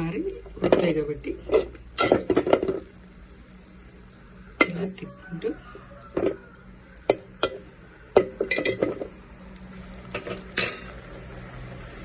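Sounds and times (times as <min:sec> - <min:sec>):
metal spoon scraping a pan: 0:00.5 - 0:02.9.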